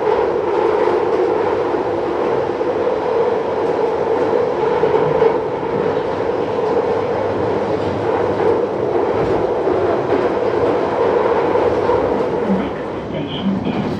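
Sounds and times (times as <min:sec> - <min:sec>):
train wheels rolling on rail: 0:00.0 - 0:13.9.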